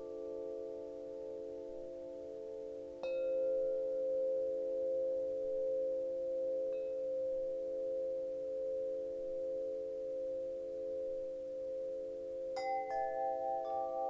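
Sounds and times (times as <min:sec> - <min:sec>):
wind chimes ringing: 0:12.6 - 0:14.0.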